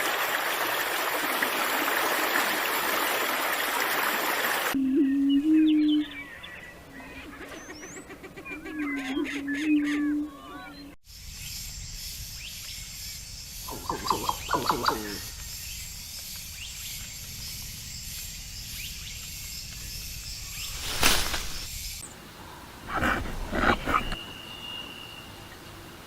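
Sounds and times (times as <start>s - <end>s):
high background hiss: 11.1s - 23.4s, 24.1s - 26.0s
animal calls: 22.8s - 24.3s
loud harsh animal call: 22.9s - 24.2s.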